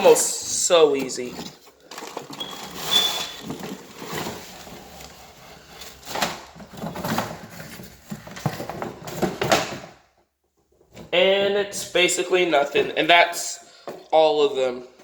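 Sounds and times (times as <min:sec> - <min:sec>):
rustling packaging: 0:00.0 - 0:09.8.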